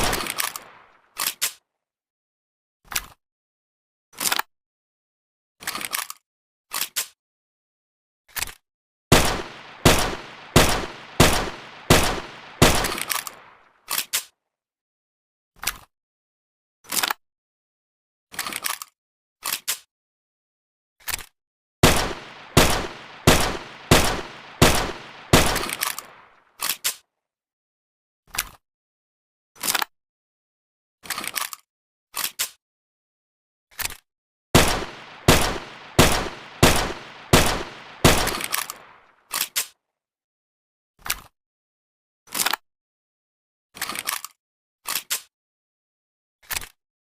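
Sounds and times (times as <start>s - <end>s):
imitated pistol shots: 0.0s - 0.9s, 9.1s - 13.6s, 21.8s - 26.3s, 34.6s - 39.0s
sharp clicks: 21.8s - 26.2s, 34.6s - 38.9s.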